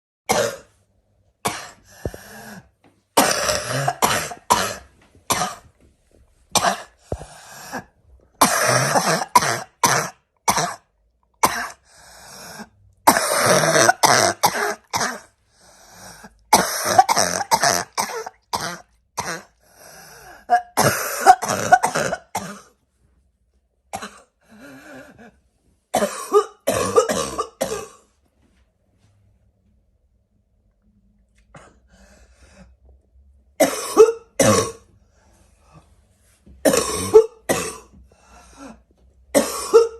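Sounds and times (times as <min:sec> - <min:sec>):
person barking cough: 0:03.2 - 0:05.7, 0:08.4 - 0:11.8, 0:13.1 - 0:15.3, 0:16.5 - 0:19.5, 0:20.5 - 0:22.7, 0:26.0 - 0:28.0, 0:33.6 - 0:34.8, 0:36.7 - 0:37.9, 0:39.4 - 0:39.9.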